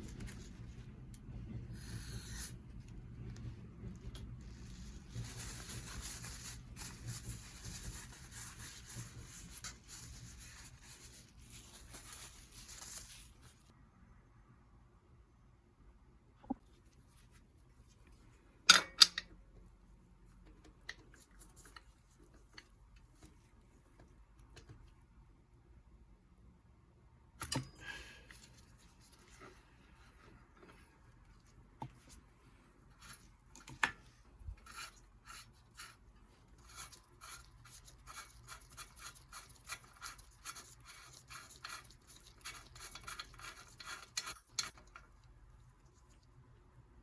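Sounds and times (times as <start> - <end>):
metal parts clicking and knocking: 18.7 - 19.3.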